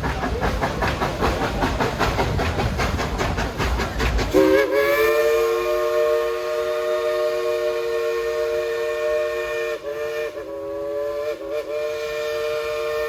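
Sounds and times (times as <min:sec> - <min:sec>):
steam locomotive chuffing: 0:00.0 - 0:13.0
steam whistle chord: 0:04.4 - 0:13.0.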